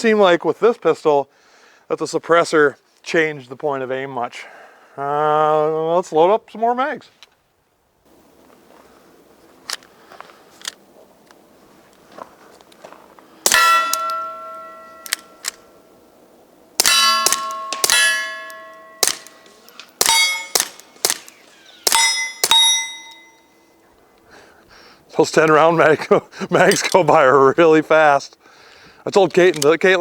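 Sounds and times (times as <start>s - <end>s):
bullets ringing off steel targets: 13.4s - 15.5s, 16.8s - 23.6s
suppressed pistol shots: 16.8s - 22.9s.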